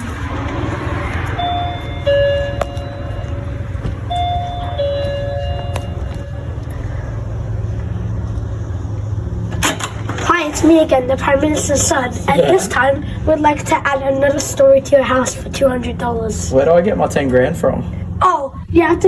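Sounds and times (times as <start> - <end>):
two-tone doorbell chime: 1.3 - 6.7.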